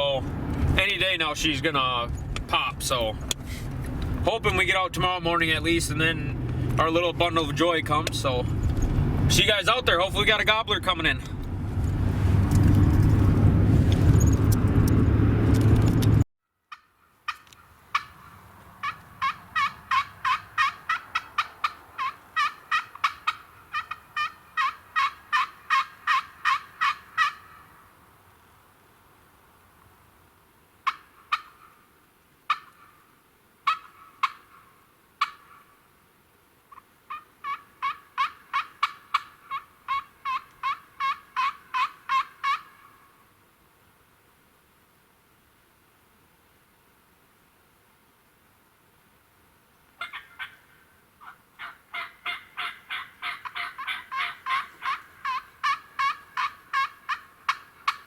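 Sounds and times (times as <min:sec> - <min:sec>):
turkey yelping: 0:16.7 - 0:27.8, 0:30.8 - 0:31.8, 0:32.5 - 0:33.0, 0:33.6 - 0:35.8, 0:36.7 - 0:43.1, 0:50.0 - 0:58.0.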